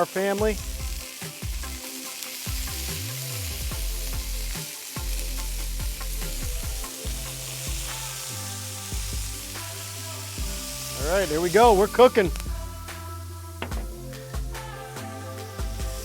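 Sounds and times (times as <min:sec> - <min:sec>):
background music: 0:00.0 - 0:16.0
burgers sizzling on a griddle: 0:00.0 - 0:16.0.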